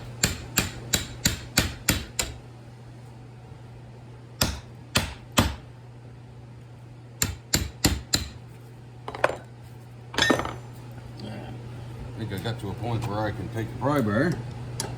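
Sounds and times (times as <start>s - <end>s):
hammer striking a punch: 0.0s - 2.4s, 4.4s - 5.6s, 7.2s - 8.4s.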